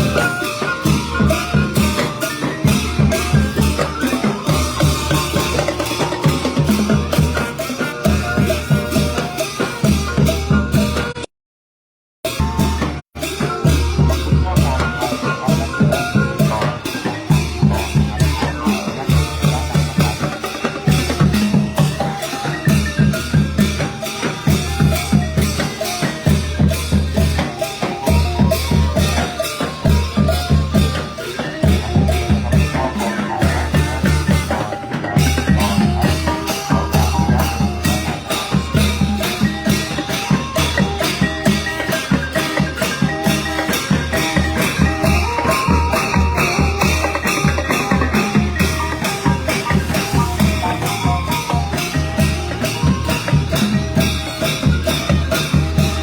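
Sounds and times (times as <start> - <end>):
brass band playing: 0.0 - 10.3, 24.2 - 56.0
heavy bass drum beat: 0.0 - 11.1, 12.3 - 56.0
fast percussion: 0.0 - 11.2, 12.2 - 56.0.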